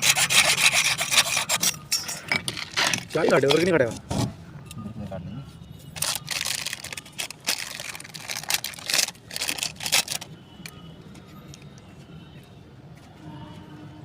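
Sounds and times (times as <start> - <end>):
rasping hand saw strokes: 0.0 - 1.8.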